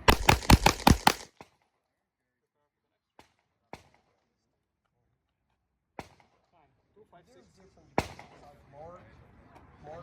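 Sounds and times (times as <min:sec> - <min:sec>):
rapid pistol fire: 0:00.0 - 0:01.3.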